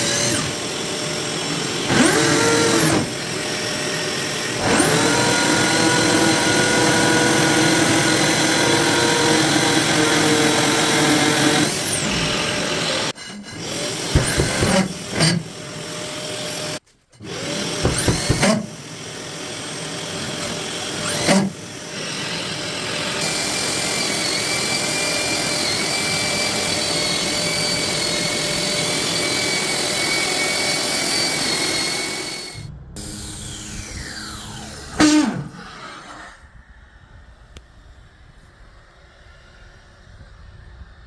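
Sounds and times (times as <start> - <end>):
high motor whine: 0.0 - 13.2, 22.2 - 41.0
core drill grinding: 0.0 - 38.0.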